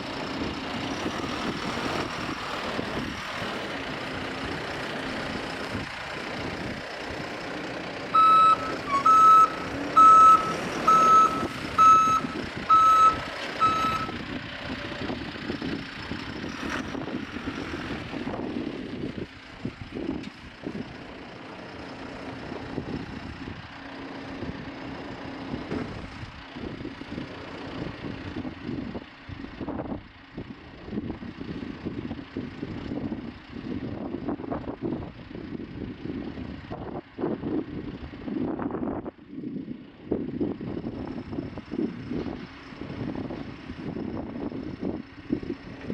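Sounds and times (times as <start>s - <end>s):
diesel engine running: 0.0s - 45.9s
reverse alarm beeps: 8.2s - 14.2s.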